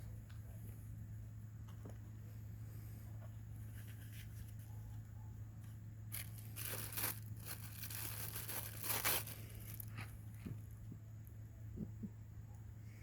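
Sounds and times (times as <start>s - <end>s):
steady low hum: 0.0s - 13.0s
gloves rustling and crinkling: 6.0s - 10.8s.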